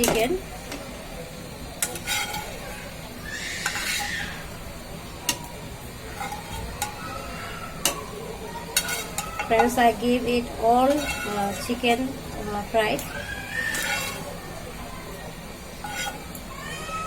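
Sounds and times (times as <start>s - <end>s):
utensil clinking against pot: 1.8s - 2.6s, 3.6s - 4.5s, 6.1s - 7.0s, 7.8s - 10.0s, 10.7s - 12.1s, 13.0s - 14.4s, 15.8s - 16.4s.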